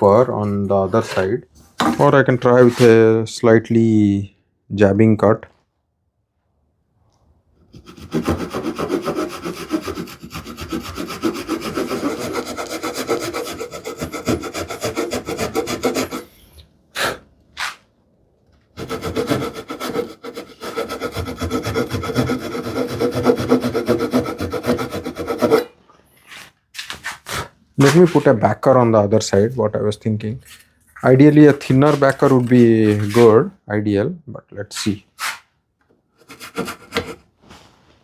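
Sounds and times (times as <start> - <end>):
hand saw cutting wood: 7.7 - 16.4, 17.0 - 17.8, 18.8 - 25.7, 26.3 - 28.4, 31.0 - 33.4, 36.2 - 37.2.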